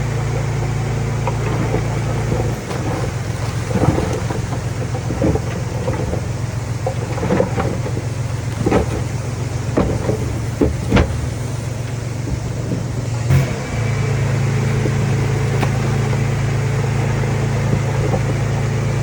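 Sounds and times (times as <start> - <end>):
heavy machinery engine hum: 0.0 - 19.0
metal clanks and knocks: 1.2 - 13.6.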